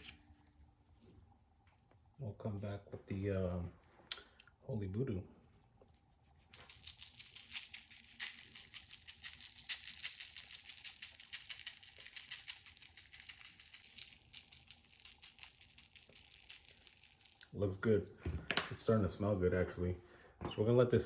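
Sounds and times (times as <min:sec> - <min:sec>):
spice shaker rattling granules: 0:06.2 - 0:17.6.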